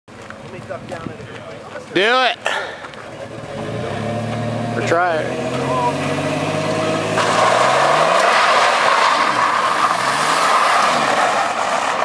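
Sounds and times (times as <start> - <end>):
truck engine revving: 3.1 - 12.0
tire squeal: 3.6 - 12.0.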